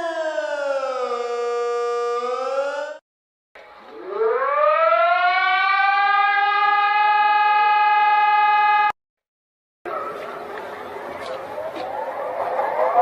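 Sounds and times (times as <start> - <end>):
emergency alert siren winding up: 0.0 - 3.0, 3.8 - 9.0.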